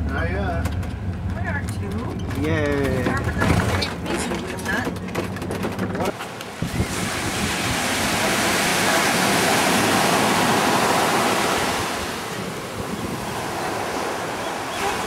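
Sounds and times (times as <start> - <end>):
ocean surf rushing: 6.1 - 15.0.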